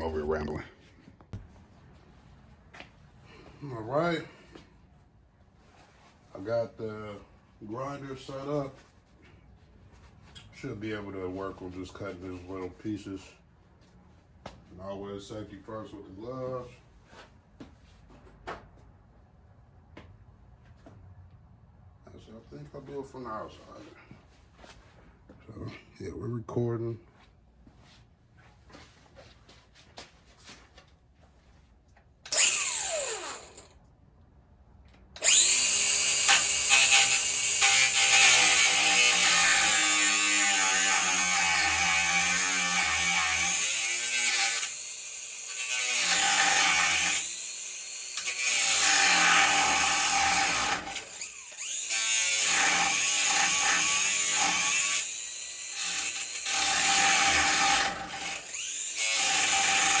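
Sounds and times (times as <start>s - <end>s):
grinder cutting metal: 32.3s - 33.8s, 35.2s - 60.0s.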